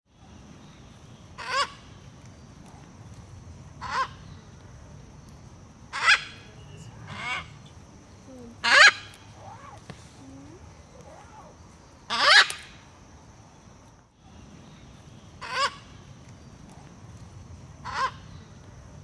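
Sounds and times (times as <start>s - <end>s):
macaw squawking: 6.0s - 7.7s, 8.5s - 12.7s.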